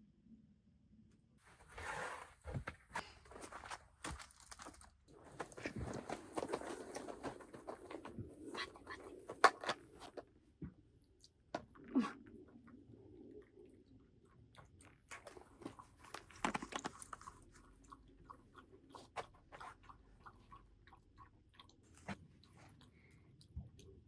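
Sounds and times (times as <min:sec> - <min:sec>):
crunchy chewing: 0:14.5 - 0:24.0.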